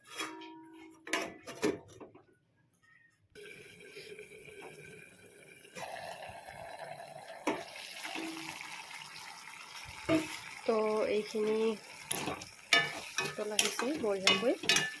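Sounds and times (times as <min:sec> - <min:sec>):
pot of curry boiling: 0:03.4 - 0:15.0.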